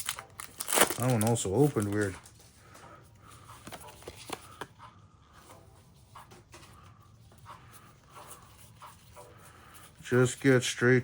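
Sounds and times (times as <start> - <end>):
cards clicking and rustling: 0.0 - 4.8.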